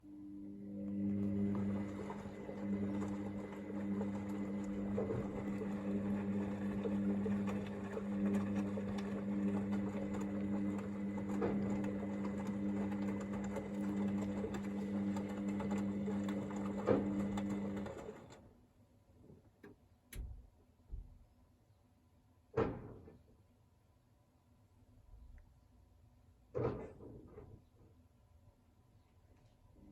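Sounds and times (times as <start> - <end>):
washing machine running: 0.4 - 18.5.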